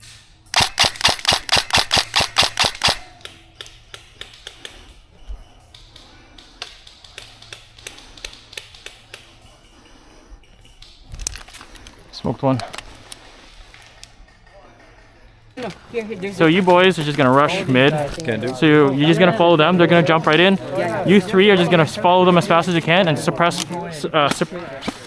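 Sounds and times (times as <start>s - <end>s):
airsoft gun firing: 0.0s - 4.9s
clicks: 0.0s - 25.0s.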